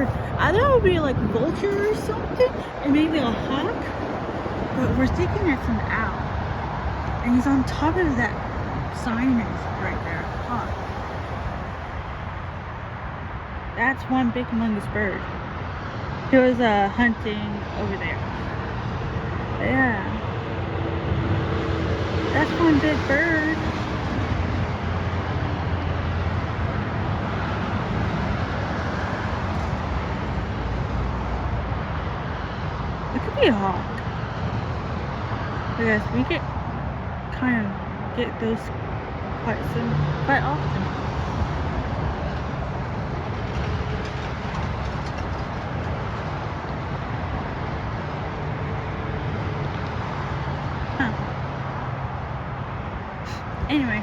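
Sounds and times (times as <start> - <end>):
road traffic rumble: 0.0 - 54.0.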